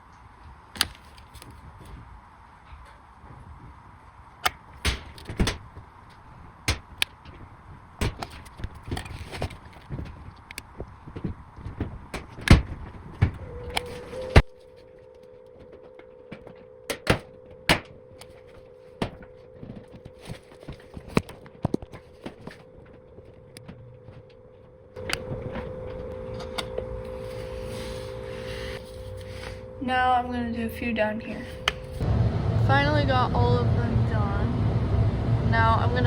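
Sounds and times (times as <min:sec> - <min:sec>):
steady hum: 0:00.0 - 0:36.0
welding gun clicks and knocks: 0:04.4 - 0:05.8, 0:06.6 - 0:07.4, 0:08.0 - 0:10.7.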